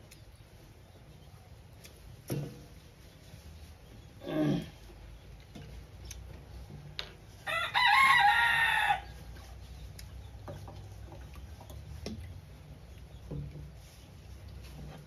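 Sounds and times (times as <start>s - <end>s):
rooster crowing: 7.4s - 9.1s.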